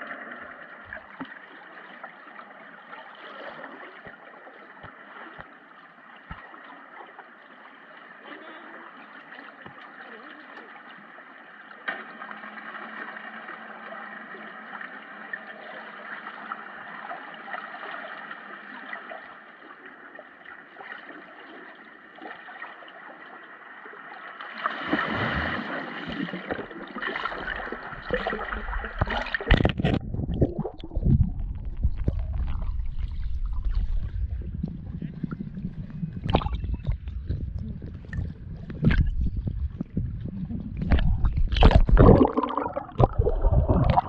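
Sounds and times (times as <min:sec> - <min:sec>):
water churning and splashing: 0:24.4 - 0:44.0.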